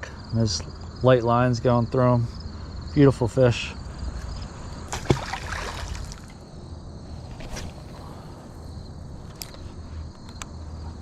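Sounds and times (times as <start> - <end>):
insect chirping: 0.0 - 11.0
water splashing: 4.9 - 6.4.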